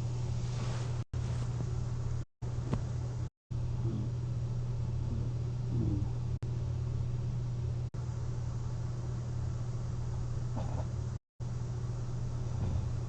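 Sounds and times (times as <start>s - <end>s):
steady low hum: 0.0s - 13.0s
person snoring lightly: 3.8s - 4.2s, 5.0s - 6.2s.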